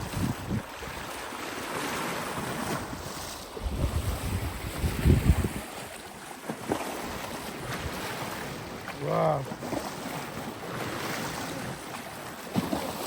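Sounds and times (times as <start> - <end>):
wind rumbling on microphone: 0.0 - 1.3, 2.5 - 6.0
rough sea waves washing: 0.0 - 13.0.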